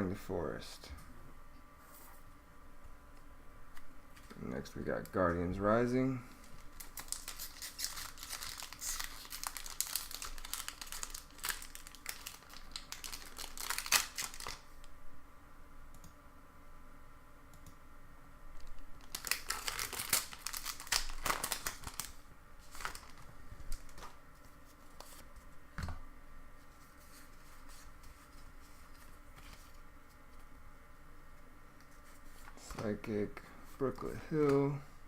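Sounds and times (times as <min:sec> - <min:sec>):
foil wrapper crinkling and tearing: 0:06.4 - 0:14.7, 0:18.6 - 0:24.2.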